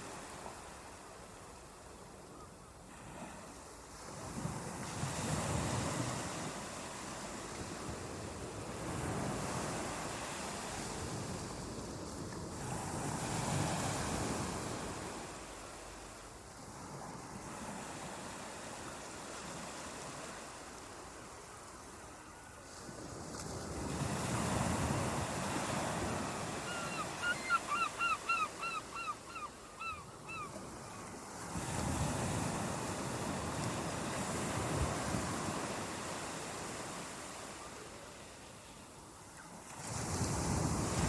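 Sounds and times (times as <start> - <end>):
ocean surf washing ashore: 22.8 - 27.8, 39.7 - 41.0.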